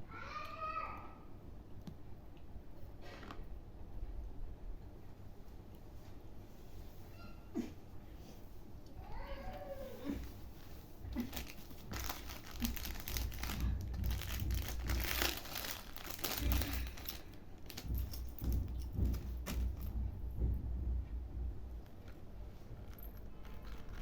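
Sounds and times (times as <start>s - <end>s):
packaging crinkling and tearing: 11.1s - 18.1s, 22.9s - 24.0s.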